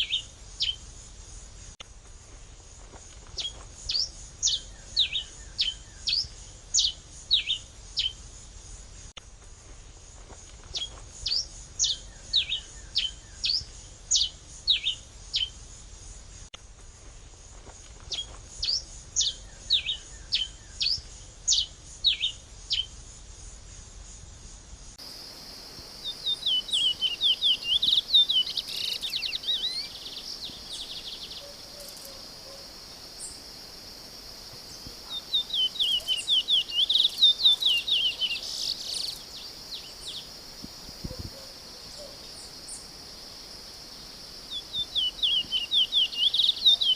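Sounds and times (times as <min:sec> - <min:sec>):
high insect buzz: 0:00.0 - 0:46.9
songbird whistling: 0:26.0 - 0:32.6, 0:35.1 - 0:40.3, 0:44.5 - 0:46.9
bird twittering: 0:26.0 - 0:33.4, 0:34.6 - 0:40.3, 0:44.5 - 0:46.9.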